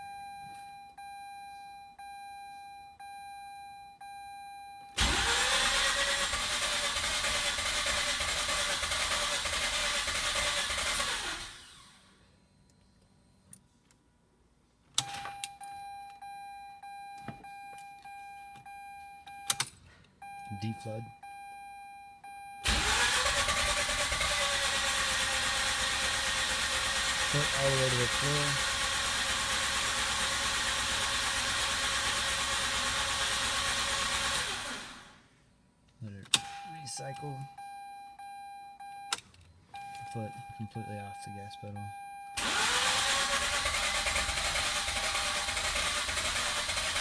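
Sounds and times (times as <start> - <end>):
car warning chime dinging: 0.0 - 5.3, 15.0 - 23.1, 36.3 - 42.4
engine starter cranking: 5.0 - 11.8, 22.6 - 28.8, 42.4 - 47.0
rotary car engine running: 22.7 - 35.1.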